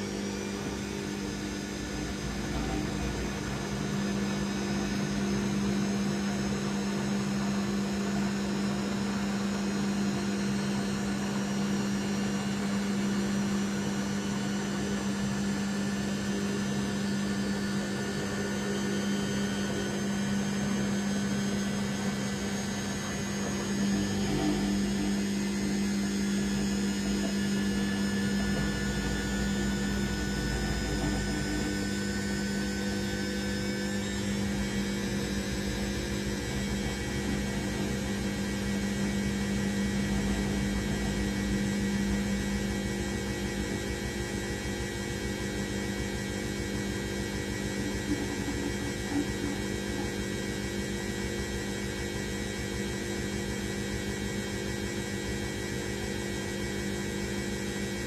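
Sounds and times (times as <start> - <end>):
washing machine running: 0.0 - 58.0.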